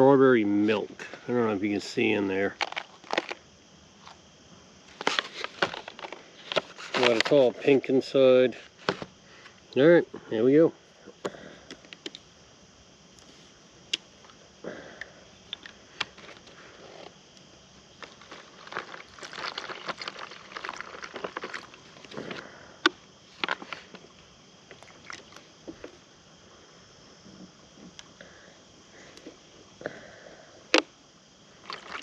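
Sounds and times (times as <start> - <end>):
foil pouch crinkling: 2.6 - 3.4, 4.9 - 7.4, 18.0 - 22.4.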